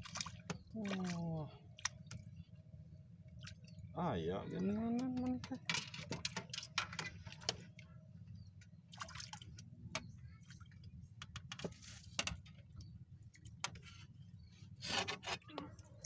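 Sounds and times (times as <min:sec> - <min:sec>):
water splashes and drips: 0:00.0 - 0:02.5, 0:03.3 - 0:03.8, 0:08.9 - 0:10.7.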